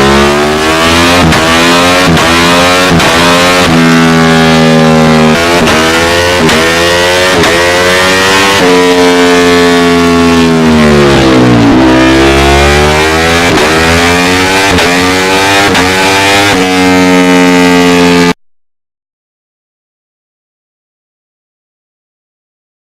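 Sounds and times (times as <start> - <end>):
motorcycle engine revving: 0.0 - 18.4.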